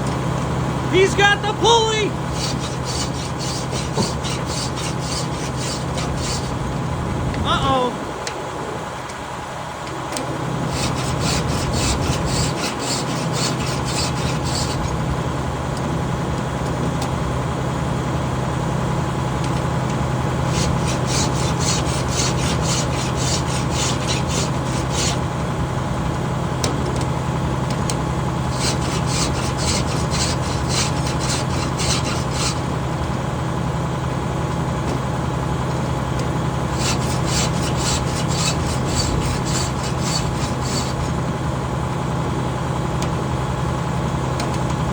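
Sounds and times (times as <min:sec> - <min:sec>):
engine running: 0:00.0 - 0:44.9
file rasping on saw chain: 0:01.2 - 0:06.6, 0:10.7 - 0:15.0, 0:20.4 - 0:25.3, 0:28.5 - 0:32.8, 0:36.7 - 0:41.3.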